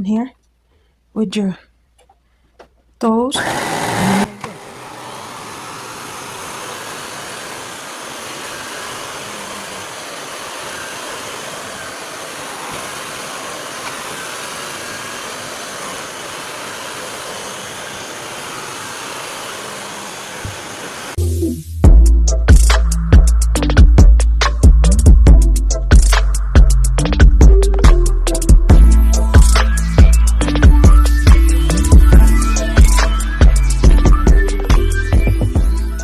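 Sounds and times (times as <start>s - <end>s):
vacuum cleaner running: 3.4s - 21.2s.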